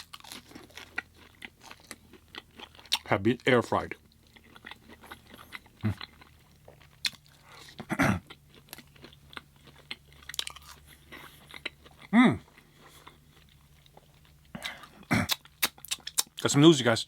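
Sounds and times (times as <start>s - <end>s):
chewing and crunching food: 0.0s - 17.0s
wet mouth clicks: 14.6s - 16.4s.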